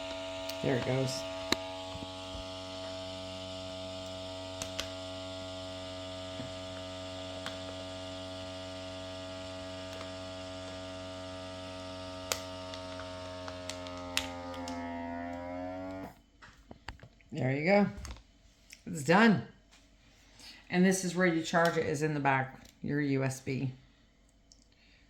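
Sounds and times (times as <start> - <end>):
small electric pump running: 0.0 - 16.2.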